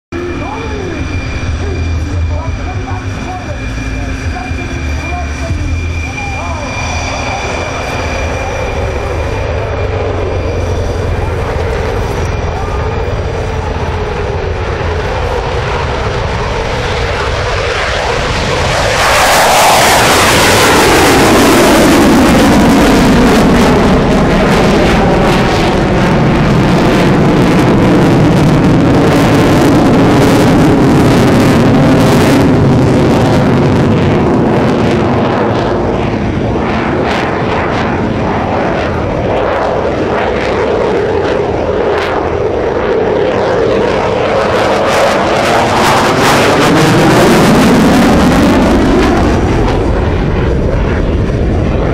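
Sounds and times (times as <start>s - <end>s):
jet engines roaring past: 0.1s - 51.9s.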